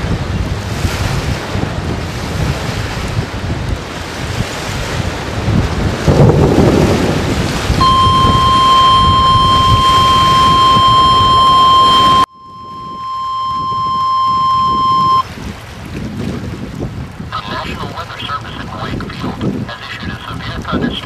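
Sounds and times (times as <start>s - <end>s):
wind buffeting microphone: 0.0s - 21.0s
steady high alarm tone: 7.8s - 15.2s.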